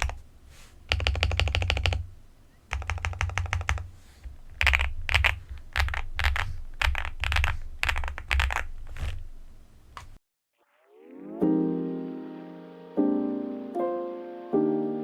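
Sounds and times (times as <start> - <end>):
mechanical keyboard key presses: 0.9 - 2.1, 2.7 - 3.9, 4.5 - 9.1.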